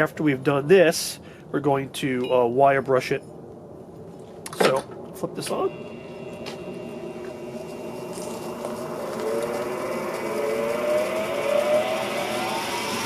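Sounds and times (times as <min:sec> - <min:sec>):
bench grinder spinning up: 0:05.7 - 0:13.0.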